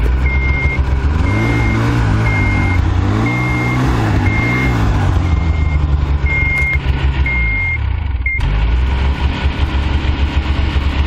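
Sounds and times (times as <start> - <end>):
vehicle engine running: 0.0 - 11.0
high electronic beep: 0.2 - 8.4.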